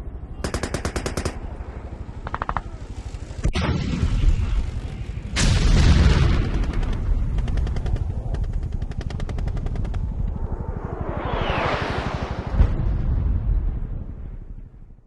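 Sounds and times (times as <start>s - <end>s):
rapid low gunfire pounding: 0.4s - 10.8s
heavy blast: 3.4s - 7.6s.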